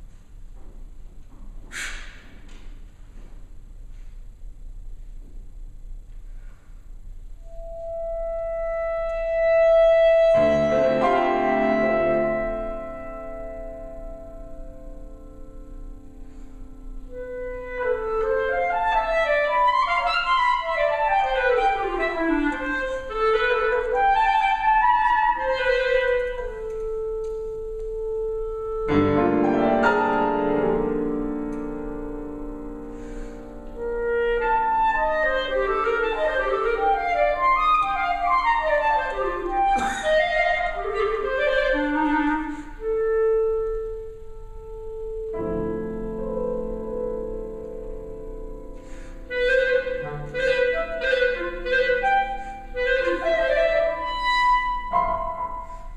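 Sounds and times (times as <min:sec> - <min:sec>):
piano: 0:07.0 - 0:55.9
clarinet: 0:07.4 - 0:55.9
loud piano chord: 0:07.8 - 0:36.8.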